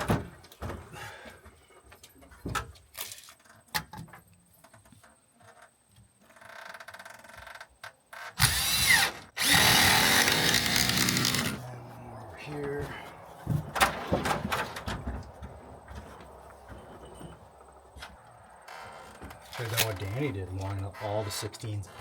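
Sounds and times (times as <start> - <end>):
power drill running: 8.4 - 11.6.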